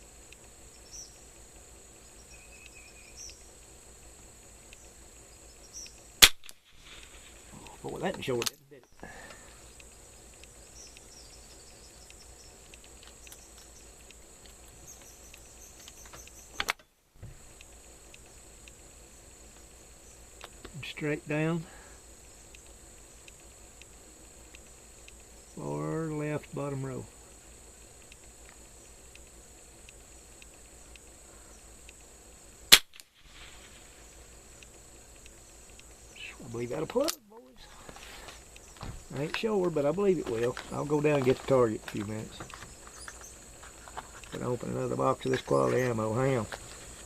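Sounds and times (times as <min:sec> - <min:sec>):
insects buzzing: 0:00.0 - 0:47.0
rifle shot: 0:06.2 - 0:07.4, 0:32.7 - 0:33.9.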